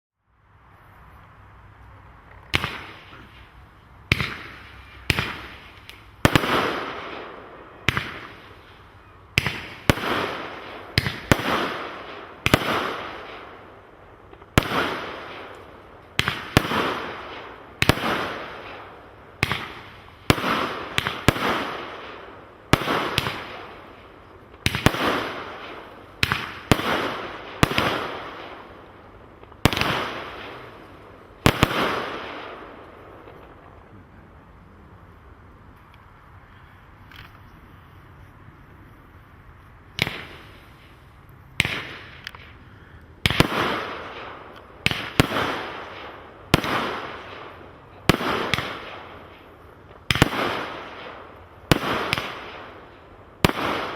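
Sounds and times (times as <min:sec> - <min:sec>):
fireworks crackling: 0:01.9 - 0:53.9
fireworks banging: 0:02.4 - 0:08.8, 0:09.4 - 0:34.2, 0:43.2 - 0:52.8.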